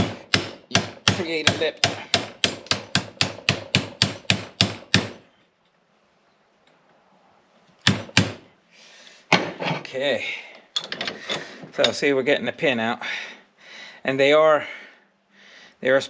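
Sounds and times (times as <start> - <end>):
hammer striking a metal punch: 0.0 - 5.2, 7.9 - 8.4.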